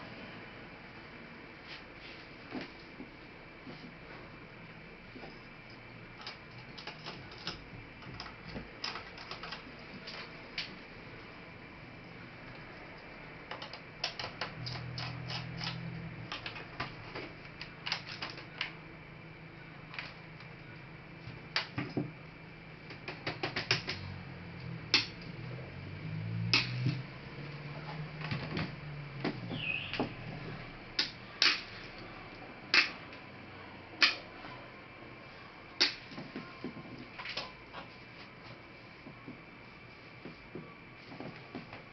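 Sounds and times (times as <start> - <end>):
small tools clicking on plastic: 6.2 - 10.7, 13.5 - 18.8.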